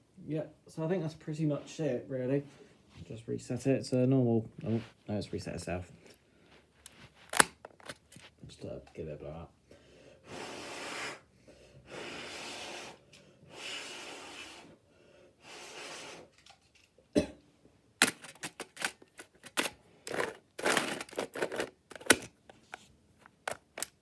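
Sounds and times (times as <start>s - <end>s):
short rustles: 4.5s - 8.4s.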